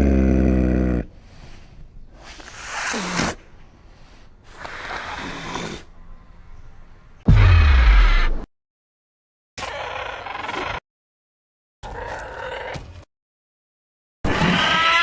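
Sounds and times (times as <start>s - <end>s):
large animal deep call: 0.0s - 1.2s
breathy hoarse exhalations: 0.2s - 6.0s.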